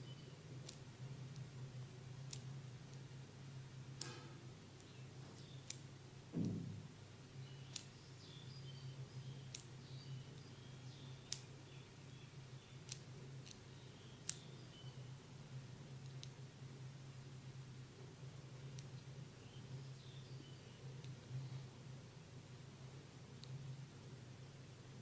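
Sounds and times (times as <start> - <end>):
low steady hum: 0.0 - 25.0
light sharp clicks: 4.0 - 6.6, 7.7 - 8.0, 11.3 - 11.5, 12.8 - 14.5
dull thump: 6.3 - 6.9.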